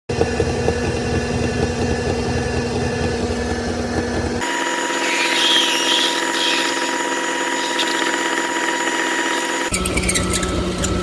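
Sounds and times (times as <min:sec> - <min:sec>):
metal lathe motor hum: 0:00.1 - 0:11.0
high thin whine: 0:04.4 - 0:11.0.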